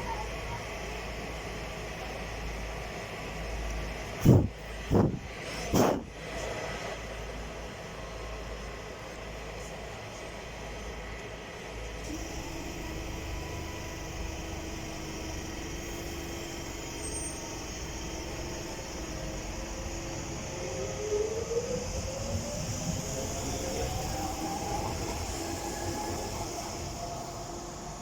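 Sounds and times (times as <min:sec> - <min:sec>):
train accelerating whine: 0:00.0 - 0:28.0
train motor whine: 0:12.0 - 0:28.0.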